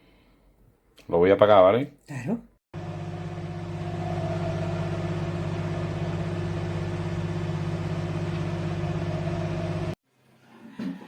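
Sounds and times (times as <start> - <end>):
microwave oven humming: 2.8 - 10.0.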